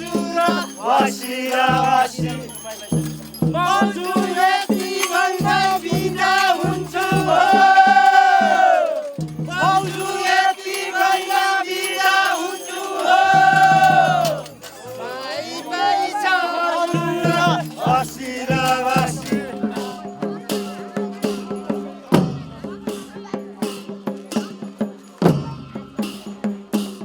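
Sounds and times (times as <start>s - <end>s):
voices singing held notes: 0.0s - 22.8s
jingling rattle: 0.0s - 27.0s
low drum beats: 1.6s - 10.4s, 16.9s - 24.6s.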